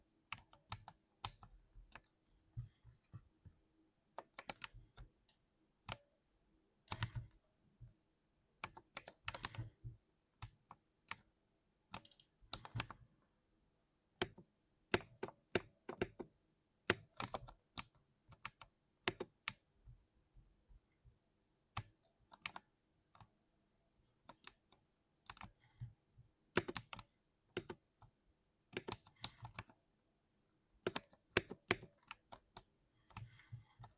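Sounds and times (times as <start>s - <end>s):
mechanical keyboard typing: 4.2s - 5.0s, 6.9s - 7.4s, 8.6s - 9.8s, 12.0s - 13.0s, 14.2s - 16.3s, 16.9s - 19.6s, 21.8s - 22.7s, 26.5s - 28.1s, 28.8s - 29.8s, 30.8s - 33.9s.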